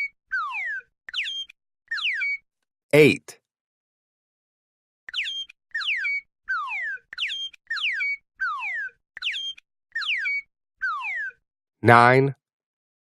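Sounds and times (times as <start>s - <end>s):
cartoon bird chirps: 0.0s - 2.4s, 5.1s - 11.4s.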